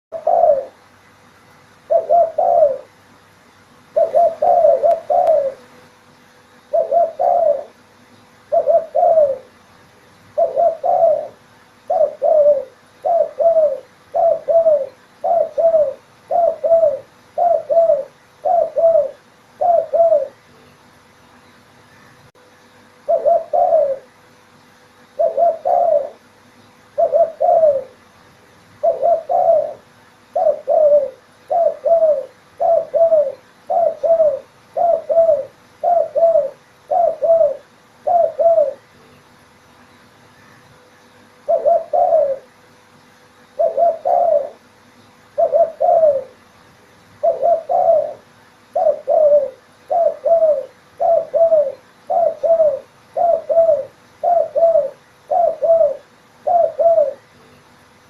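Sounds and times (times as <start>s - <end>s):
dove cooing: 0.1s - 0.9s, 1.9s - 3.0s, 3.9s - 5.8s, 6.6s - 7.8s, 8.4s - 9.6s, 10.3s - 20.5s, 23.0s - 24.2s, 25.2s - 26.3s, 26.9s - 28.1s, 28.8s - 39.0s, 41.4s - 42.6s, 43.5s - 44.7s, 45.3s - 46.5s, 47.2s - 57.4s.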